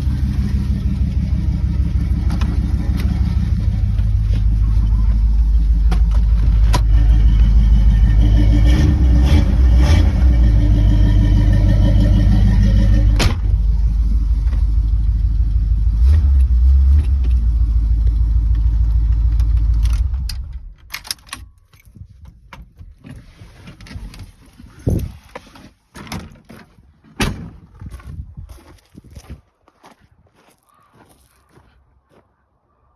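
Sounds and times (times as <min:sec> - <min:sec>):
car engine droning: 0:00.0 - 0:20.9.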